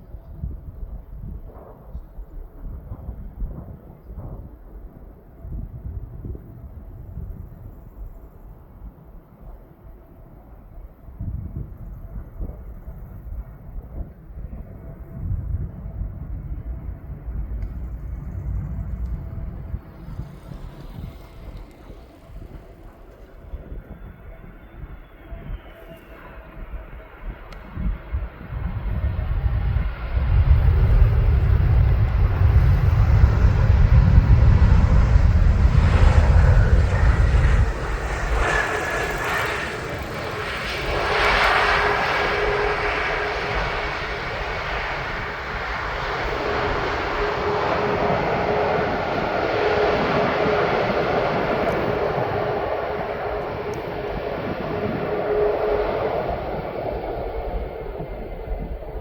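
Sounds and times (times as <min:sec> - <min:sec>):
jet engine whine and drone: 0:00.0 - 0:59.0
jet engines rumbling: 0:00.0 - 0:59.0.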